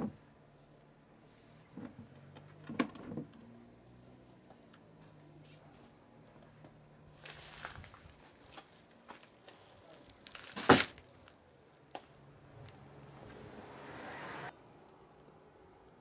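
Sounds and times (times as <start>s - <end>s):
short rustle: 7.1s - 8.8s.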